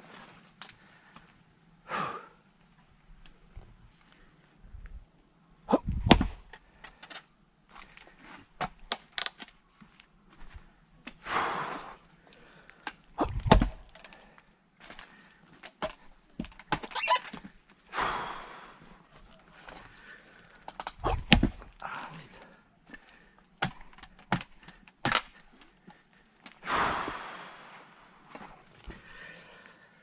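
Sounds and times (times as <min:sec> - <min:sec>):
hard breaths out: 0:11.1 - 0:16.1, 0:17.0 - 0:23.9, 0:24.5 - 0:30.0.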